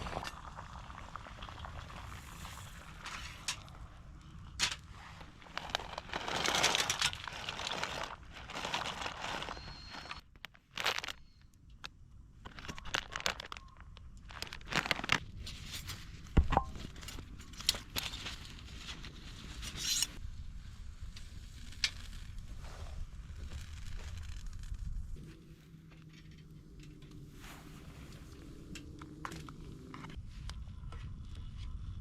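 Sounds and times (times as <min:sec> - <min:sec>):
packaging crinkling and rustling: 0:05.2 - 0:11.3, 0:12.4 - 0:16.0.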